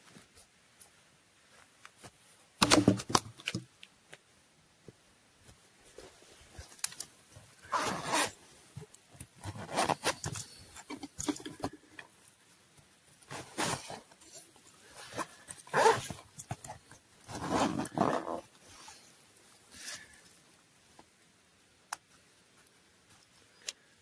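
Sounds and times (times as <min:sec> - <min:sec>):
camping gear rustling and crinkling: 0:00.0 - 0:24.0.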